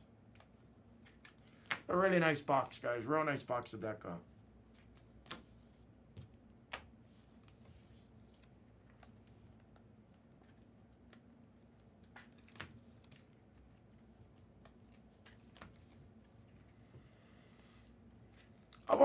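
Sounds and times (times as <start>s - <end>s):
faint steady hum: 0.0s - 19.0s
trading cards and foil packs handled: 0.4s - 3.8s, 7.2s - 16.8s.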